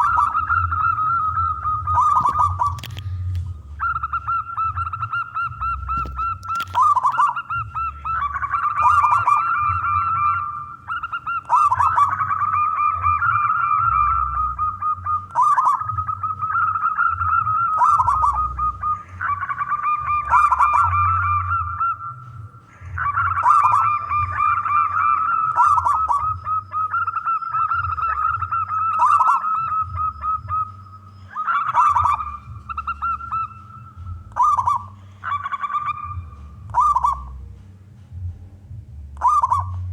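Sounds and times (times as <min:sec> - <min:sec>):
dove cooing: 0:00.0 - 0:39.9
low rumble: 0:32.0 - 0:39.9.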